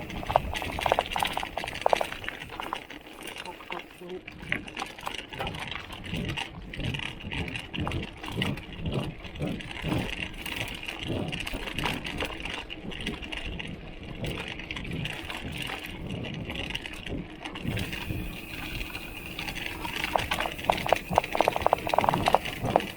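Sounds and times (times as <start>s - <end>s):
bottle cage rattling: 0.0s - 4.0s, 17.6s - 22.9s
tyre and trail noise: 0.0s - 22.9s.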